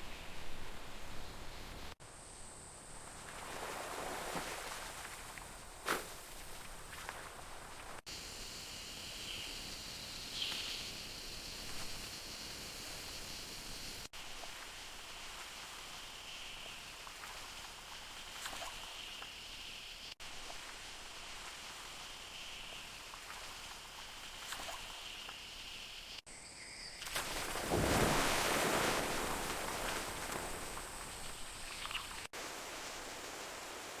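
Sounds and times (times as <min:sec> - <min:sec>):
high insect drone: 0:08.1 - 0:14.1, 0:18.5 - 0:34.0.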